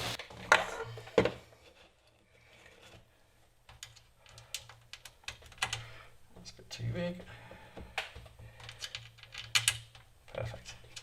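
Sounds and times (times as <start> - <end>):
small tools clicking and tapping: 7.8 - 11.0.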